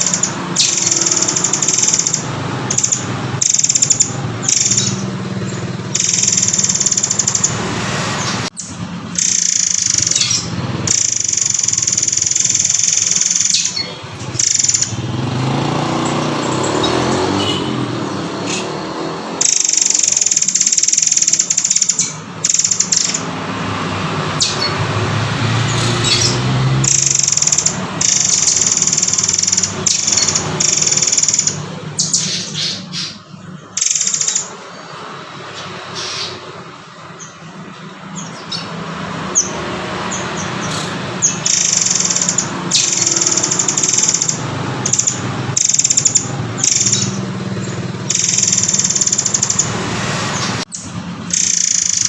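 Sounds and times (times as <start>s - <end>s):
bird singing high shrill calls: 0.0s - 52.0s.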